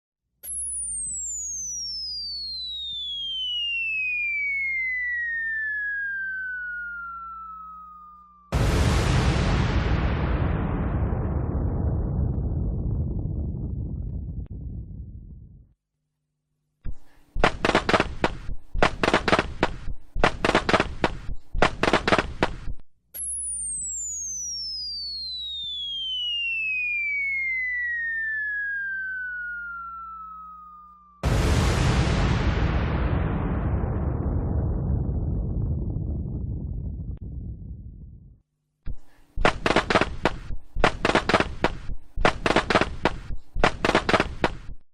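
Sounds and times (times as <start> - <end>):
firecracker crack: 8.5 - 12.8, 17.4 - 22.7, 39.4 - 44.8
low rumble: 8.6 - 15.8, 31.2 - 38.4
rapid popping firecracker bangs: 17.4 - 22.8, 39.4 - 44.8.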